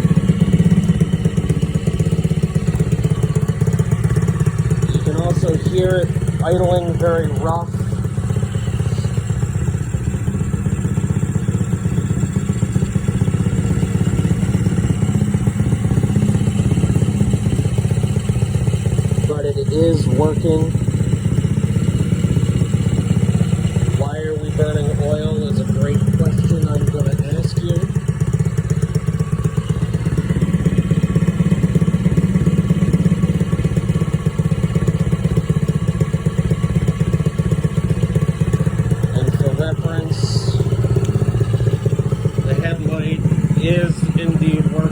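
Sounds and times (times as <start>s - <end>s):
small engine idling rough: 0.0s - 44.9s.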